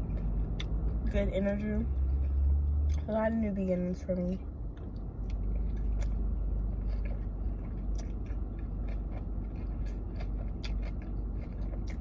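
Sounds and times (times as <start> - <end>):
person chewing crunchy food: 0.0 - 1.1, 4.8 - 12.0
low steady hum: 0.0 - 12.0.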